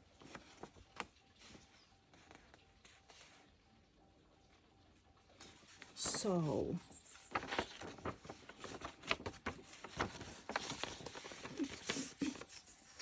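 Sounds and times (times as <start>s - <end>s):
packaging being unwrapped: 7.3s - 13.0s.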